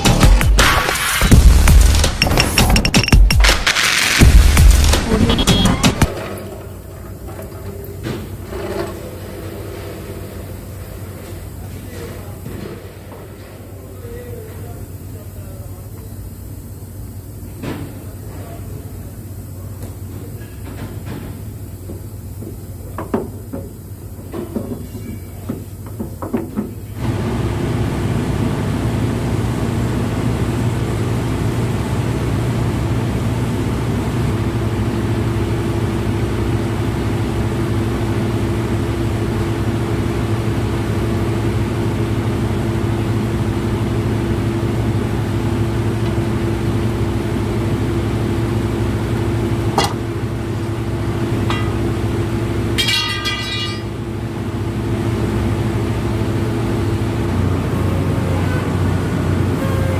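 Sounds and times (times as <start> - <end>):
heavy diesel engine running: 27.0 - 59.9
steady whine: 37.5 - 58.2.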